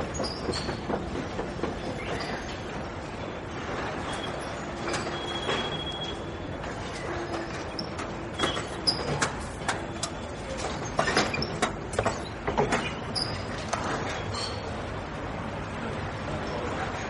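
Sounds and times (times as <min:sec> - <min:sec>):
sharp clicks and knocks: 0:07.3 - 0:13.0.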